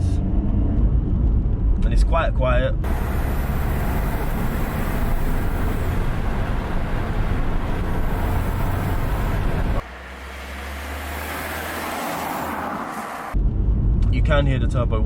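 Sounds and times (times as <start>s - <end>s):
road noise hiss: 2.8s - 13.4s
car engine rumble: 2.8s - 13.8s.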